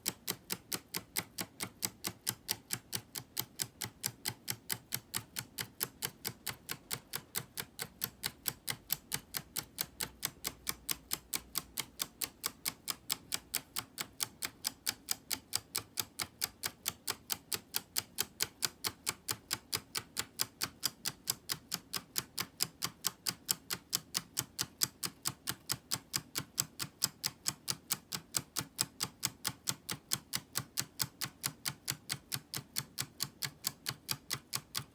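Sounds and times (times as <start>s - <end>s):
escapement model ticking: 0.0s - 34.9s.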